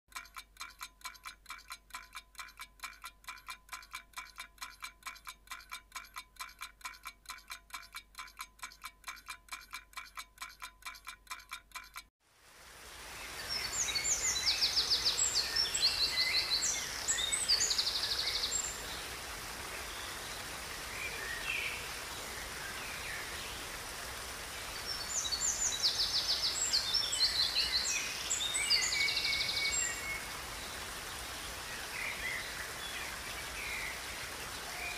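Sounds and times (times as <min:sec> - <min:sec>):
songbirds trilling: 0:13.3 - 0:19.1, 0:24.6 - 0:34.9.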